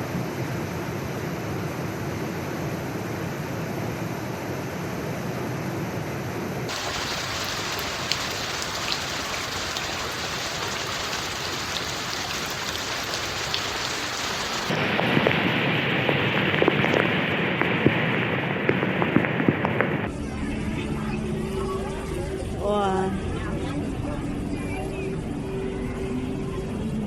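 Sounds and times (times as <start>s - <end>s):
heavy rain hissing: 6.7s - 20.1s
raindrops splashing: 6.7s - 20.1s.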